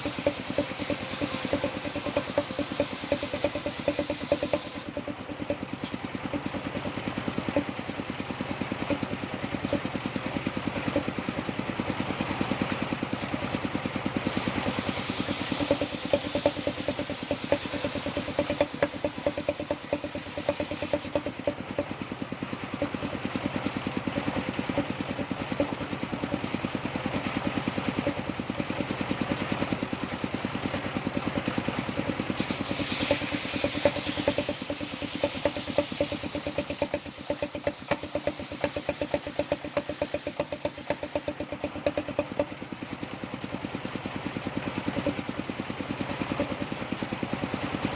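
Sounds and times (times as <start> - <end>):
sawing machine engine running: 0.0 - 47.9
bright hiss: 32.4 - 36.9.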